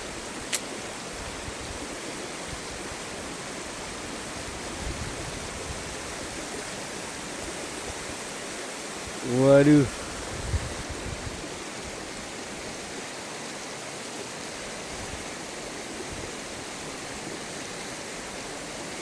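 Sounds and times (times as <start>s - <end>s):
river water rushing: 0.0s - 19.0s
sharp click: 0.5s - 0.7s.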